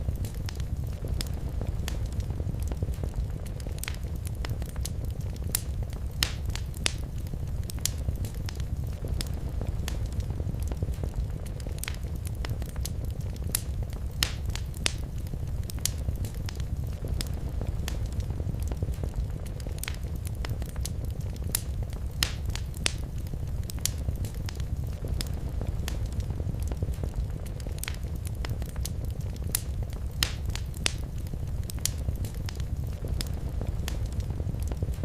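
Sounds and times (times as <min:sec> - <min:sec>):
fire low rumble: 0:00.0 - 0:35.0
wood fire crackling and popping: 0:00.0 - 0:35.0.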